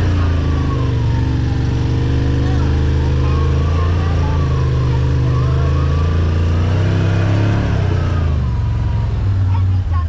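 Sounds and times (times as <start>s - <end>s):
utility vehicle engine running: 0.0s - 10.0s.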